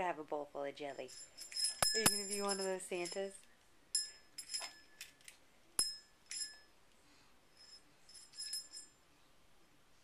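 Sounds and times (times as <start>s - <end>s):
small bell jingling: 0.9s - 5.1s, 5.8s - 6.7s, 7.5s - 9.0s.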